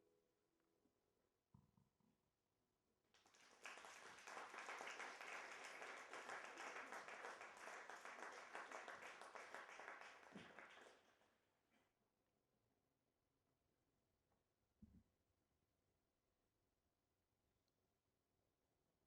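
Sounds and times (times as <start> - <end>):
audience applause: 3.2 - 11.1.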